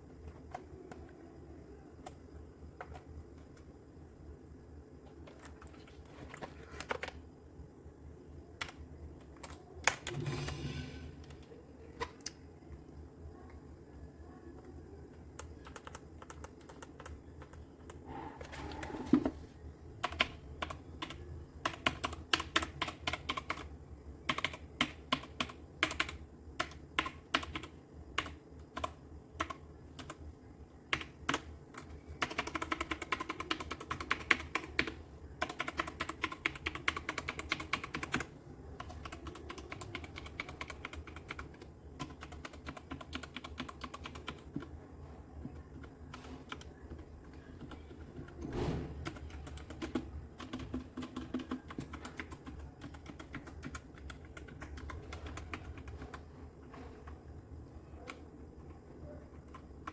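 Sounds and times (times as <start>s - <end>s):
mechanical keyboard typing: 2.0s - 3.7s, 5.3s - 7.2s, 15.3s - 18.0s, 20.0s - 30.2s, 30.9s - 44.7s, 45.7s - 48.4s, 49.0s - 56.2s, 59.3s - 59.9s.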